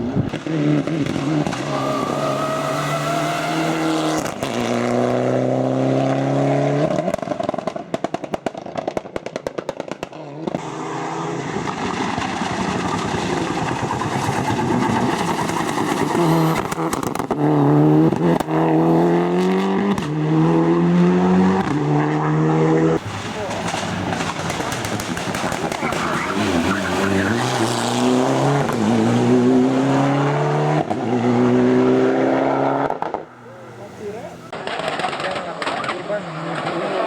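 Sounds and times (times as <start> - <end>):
car engine revving: 0.0 - 7.7, 10.5 - 37.0
exhaust popping and crackling: 7.0 - 10.7, 11.4 - 17.5, 23.0 - 29.8, 32.3 - 36.8.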